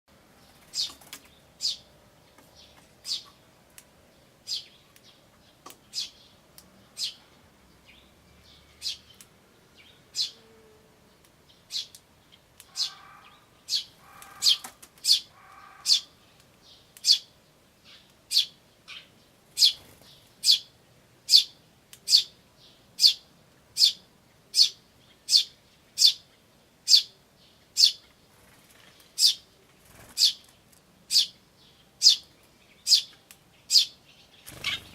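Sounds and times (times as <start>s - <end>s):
sparrows chirping: 0.3s - 34.9s
harsh bird chattering: 12.7s - 16.1s, 34.5s - 34.9s.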